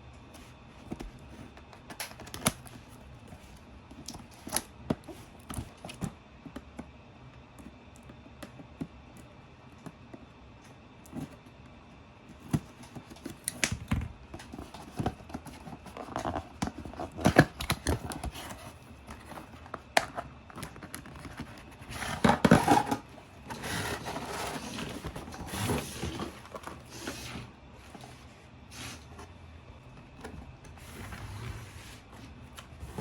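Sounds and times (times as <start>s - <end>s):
plastic and cardboard crinkling: 12.3s - 33.0s.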